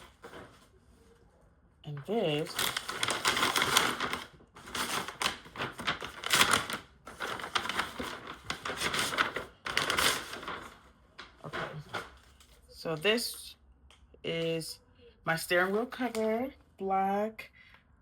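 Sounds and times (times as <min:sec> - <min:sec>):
plastic packaging crinkling: 0:02.0 - 0:12.7.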